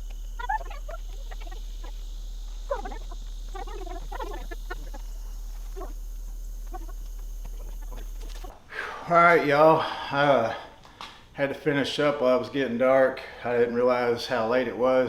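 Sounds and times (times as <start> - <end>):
chickens clucking: 0.0 - 8.5.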